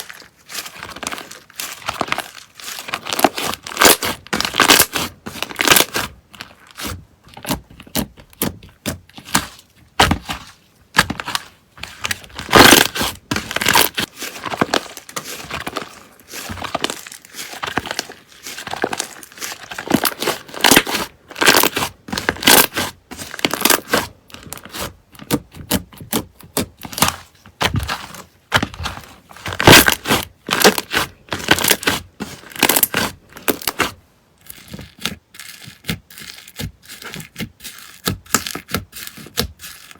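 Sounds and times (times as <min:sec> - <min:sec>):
slime crackling and popping: 0:00.0 - 0:06.1, 0:12.0 - 0:15.8, 0:29.5 - 0:37.1.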